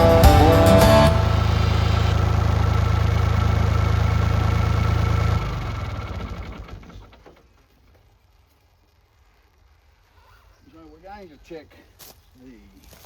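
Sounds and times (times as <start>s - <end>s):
diesel engine idling and shutting off: 0.0s - 8.0s.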